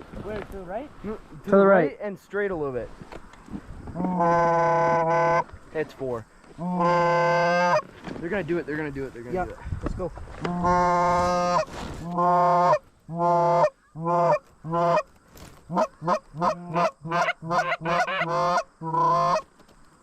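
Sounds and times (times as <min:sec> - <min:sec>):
goose call honks: 0:04.0 - 0:05.5, 0:06.6 - 0:07.9, 0:10.4 - 0:15.1, 0:15.7 - 0:19.4.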